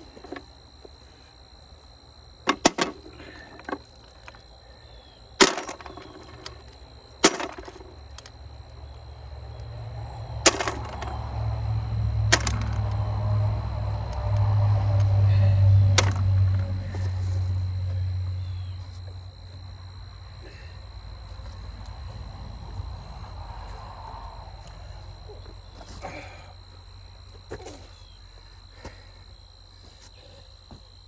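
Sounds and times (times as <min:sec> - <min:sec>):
insect trill: 0:00.0 - 0:31.0
low rumble: 0:08.4 - 0:25.9
sharp ringing knocks: 0:10.4 - 0:11.5.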